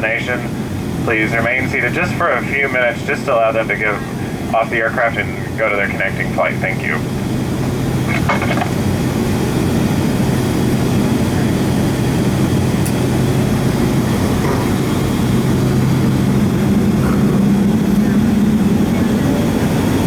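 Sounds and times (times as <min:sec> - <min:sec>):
aircraft cabin engine hum: 0:00.0 - 0:20.0.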